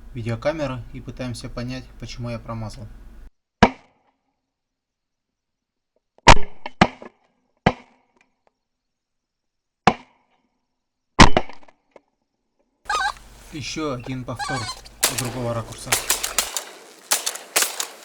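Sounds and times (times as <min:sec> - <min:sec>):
shotgun shots: 0:12.9 - 0:18.0.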